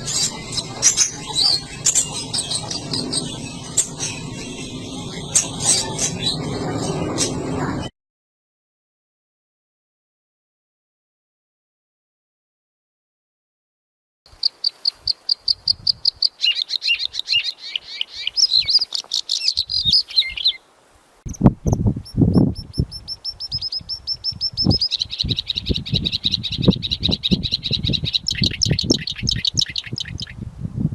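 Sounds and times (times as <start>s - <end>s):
bird singing high chirps and trills: 0.0s - 7.9s, 14.3s - 20.6s, 21.3s - 30.4s.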